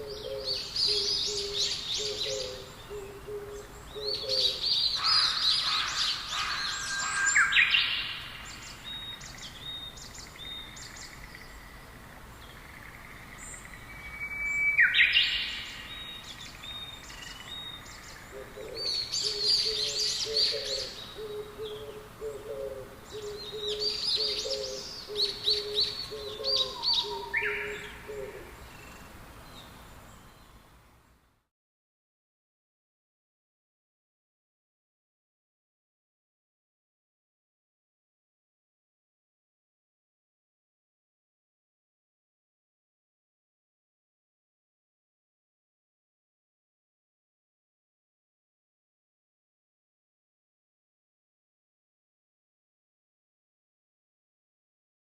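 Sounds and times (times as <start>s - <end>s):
songbirds chirping and trilling: 0.0s - 31.4s.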